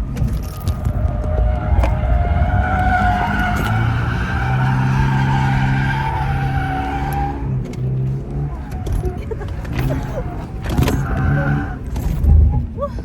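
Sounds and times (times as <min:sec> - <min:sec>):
car engine: 0:00.0 - 0:13.0
tyres squealing: 0:00.8 - 0:07.4, 0:08.6 - 0:12.0.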